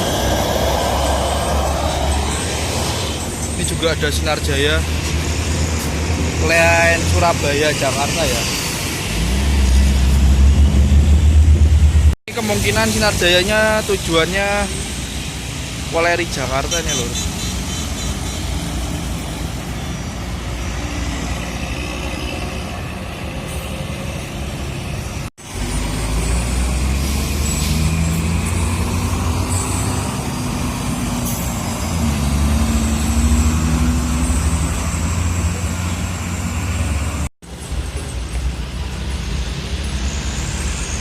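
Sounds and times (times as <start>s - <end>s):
buses and trucks passing: 0.0s - 41.0s
deep engine rumble: 9.0s - 12.2s.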